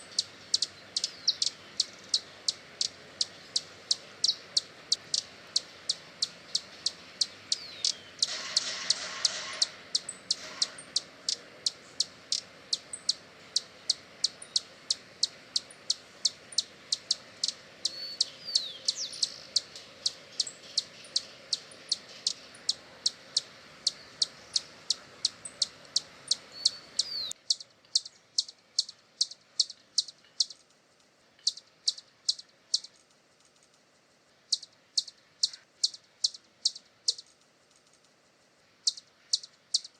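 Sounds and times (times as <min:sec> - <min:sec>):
hummingbird chip notes: 0:00.0 - 0:08.7, 0:09.6 - 0:30.6
background hiss: 0:00.0 - 0:39.9.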